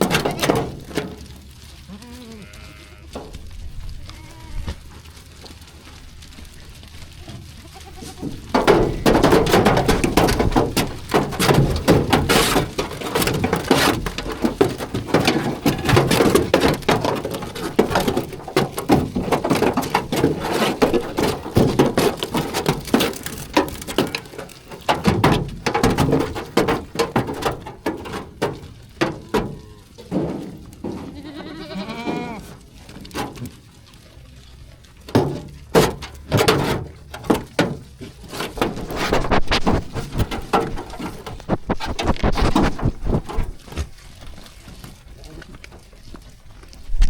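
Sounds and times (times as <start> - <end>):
sheep hooves clattering: 0.0 - 47.0
sheep bleating: 1.8 - 3.2, 4.0 - 5.0, 7.1 - 8.4, 31.1 - 32.5.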